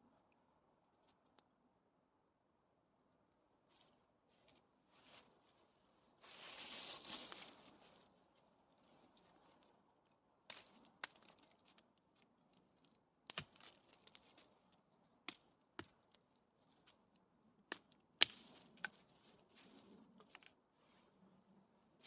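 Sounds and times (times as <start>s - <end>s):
faint rustling: 3.7s - 9.7s.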